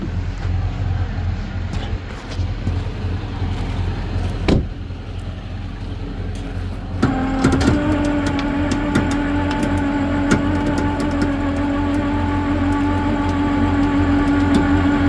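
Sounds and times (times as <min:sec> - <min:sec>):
diesel engine rumbling: 0:00.0 - 0:15.0
loud steady hum: 0:00.0 - 0:15.0.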